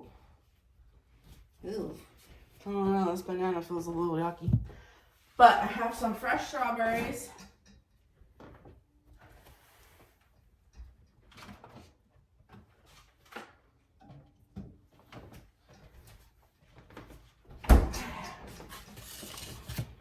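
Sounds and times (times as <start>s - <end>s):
rustling and scraping: 8.3s - 13.7s, 18.4s - 20.0s.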